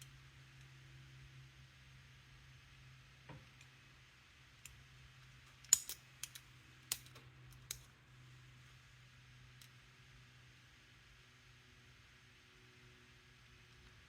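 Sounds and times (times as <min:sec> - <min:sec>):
faint steady hum: 0:00.0 - 0:14.0
sharp metallic clicks in padlock: 0:05.6 - 0:07.8.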